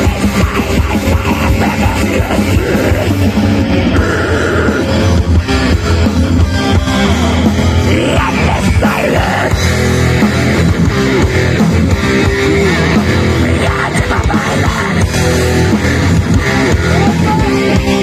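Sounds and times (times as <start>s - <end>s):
bass guitar: 0.0s - 18.0s
distorted electric guitars: 0.0s - 18.0s
fast drumming: 0.0s - 18.0s.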